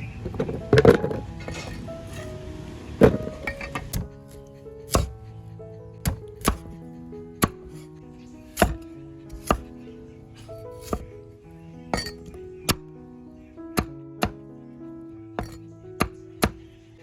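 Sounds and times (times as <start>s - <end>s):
background music sustained notes: 0.0s - 17.0s
knife chopping on cutting board: 3.0s - 5.2s, 6.0s - 6.8s, 7.4s - 7.8s, 8.6s - 9.7s, 10.5s - 11.1s, 15.4s - 16.6s.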